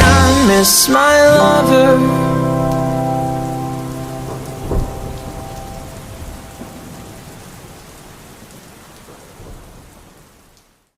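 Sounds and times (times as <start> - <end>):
pouring rain: 0.0 - 10.9
thunder crack: 2.3 - 8.2.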